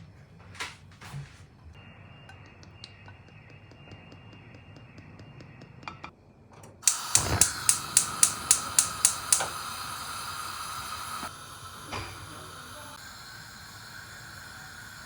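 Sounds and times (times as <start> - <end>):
igniter clicking: 6.8 - 13.0
gas rushing: 6.8 - 15.0
hiss of gas flame: 6.8 - 15.0.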